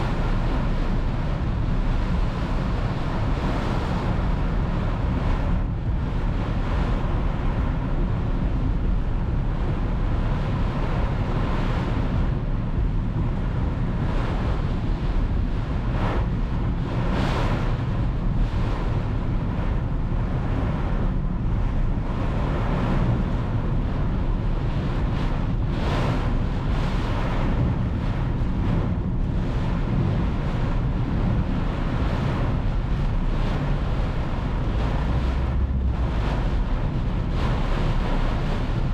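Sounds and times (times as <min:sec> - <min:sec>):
wind buffeting microphone: 0:00.0 - 0:38.9
heavy rain: 0:33.4 - 0:38.9.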